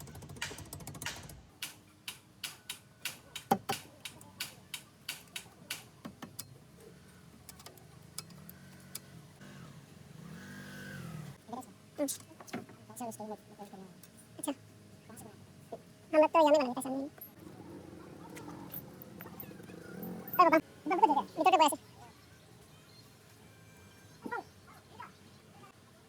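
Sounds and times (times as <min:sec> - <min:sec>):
sharp irregular clicks and knocks: 0:00.0 - 0:06.6, 0:07.4 - 0:09.1
engine running: 0:06.8 - 0:11.4, 0:16.7 - 0:21.6.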